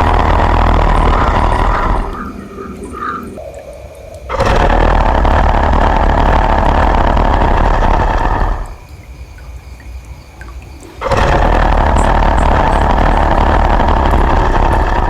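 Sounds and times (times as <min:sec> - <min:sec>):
monster roar: 0:00.0 - 0:03.6, 0:04.3 - 0:08.8, 0:11.0 - 0:15.0.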